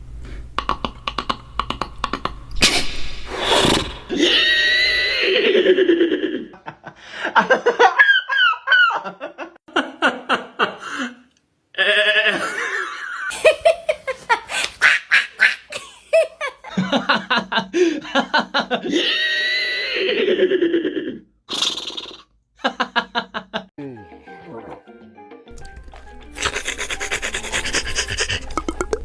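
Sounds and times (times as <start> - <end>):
cartoonish cackling laughter: 4.1 - 6.8, 7.4 - 10.8, 12.1 - 21.2, 26.4 - 29.0.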